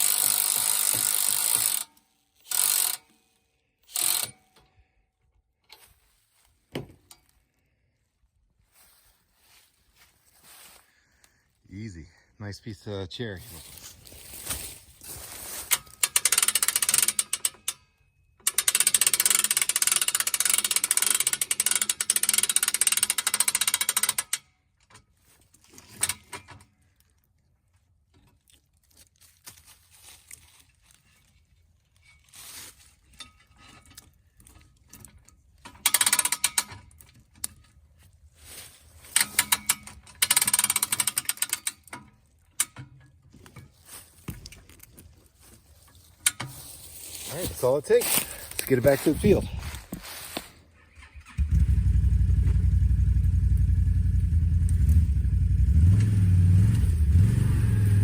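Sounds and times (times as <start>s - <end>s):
rapid mechanical ratcheting: 0.0s - 3.1s, 3.8s - 4.5s, 15.7s - 24.6s, 35.6s - 37.4s, 39.1s - 42.8s.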